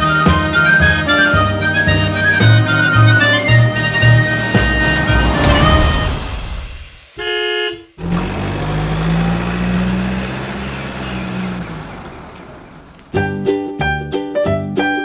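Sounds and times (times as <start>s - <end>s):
car engine humming: 0.6s - 6.7s, 7.8s - 13.4s
car horn honk: 7.2s - 8.2s, 10.0s - 13.1s.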